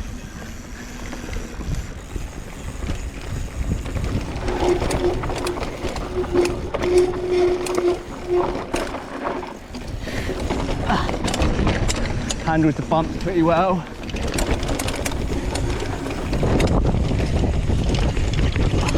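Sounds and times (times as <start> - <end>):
bike rattling over bumps: 0.0 - 18.9
wind rumble on microphone: 0.0 - 18.9.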